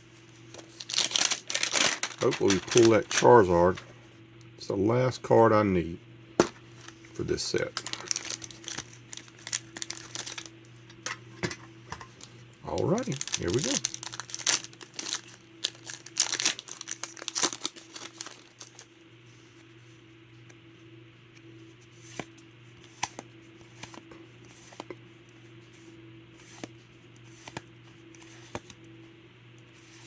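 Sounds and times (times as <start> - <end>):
faint steady hum: 0.0 - 30.0
foil wrapper tearing and crinkling: 0.6 - 3.8, 7.5 - 10.5, 12.7 - 18.9.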